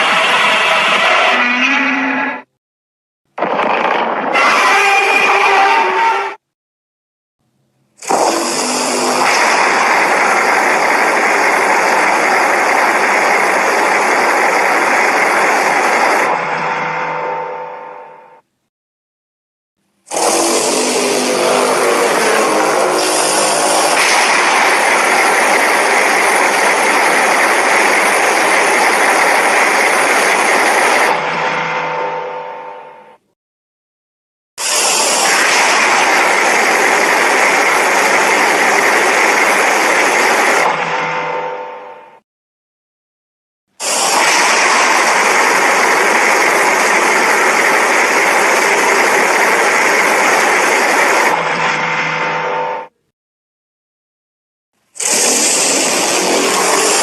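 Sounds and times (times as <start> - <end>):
monster roar rushing noise: 20.1 - 29.2.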